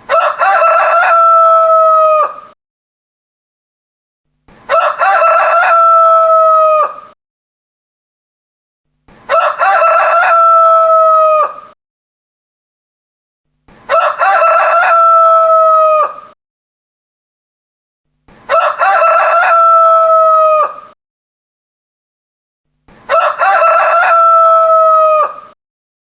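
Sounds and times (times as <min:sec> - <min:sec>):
rooster crowing: 0:00.1 - 0:02.6, 0:04.7 - 0:07.2, 0:09.3 - 0:11.8, 0:13.9 - 0:16.4, 0:18.5 - 0:21.0, 0:23.1 - 0:25.6.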